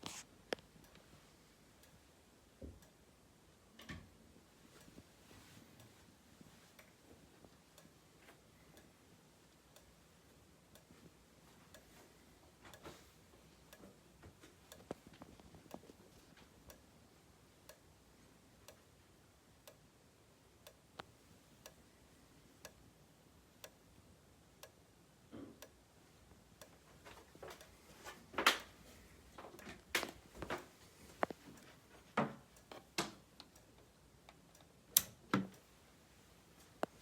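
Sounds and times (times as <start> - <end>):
irregular clicks and knocks: 25.3 - 35.8.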